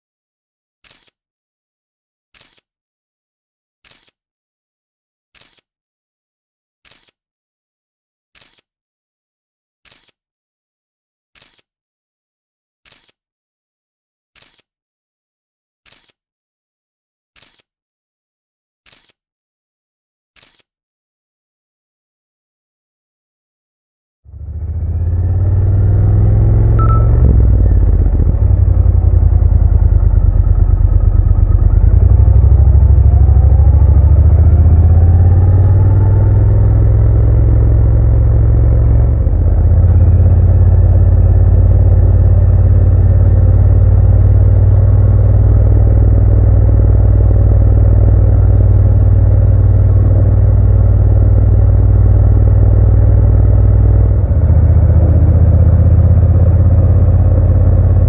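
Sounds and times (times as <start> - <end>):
motorcycle engine rumbling: 24.4 - 58.0.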